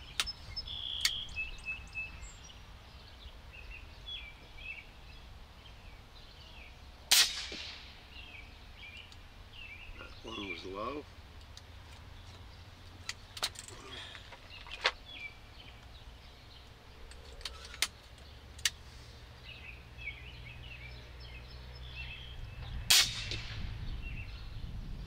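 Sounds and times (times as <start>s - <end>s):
air rifle shot with echo: 7.1s - 8.0s, 22.9s - 23.8s.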